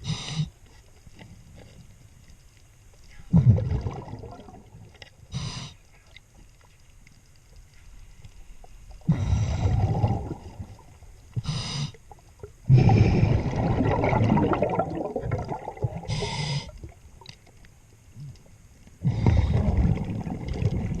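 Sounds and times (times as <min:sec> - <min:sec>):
bubbling exhalations underwater: 0:03.3 - 0:04.9, 0:09.0 - 0:11.0, 0:12.4 - 0:17.0, 0:19.0 - 0:21.0
hissing regulator inhalations: 0:05.3 - 0:05.9, 0:11.4 - 0:12.1, 0:16.0 - 0:16.9.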